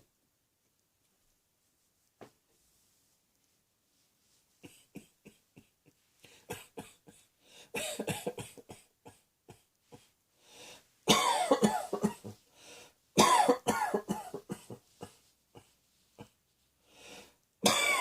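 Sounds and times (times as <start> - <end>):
person coughing: 6.3 - 7.2, 7.8 - 9.6, 11.1 - 12.4, 13.2 - 16.3, 17.6 - 18.0.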